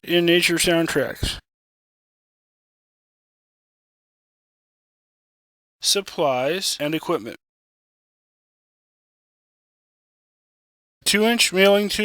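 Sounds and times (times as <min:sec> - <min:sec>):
person speaking: 0:00.0 - 0:01.4, 0:05.8 - 0:07.4.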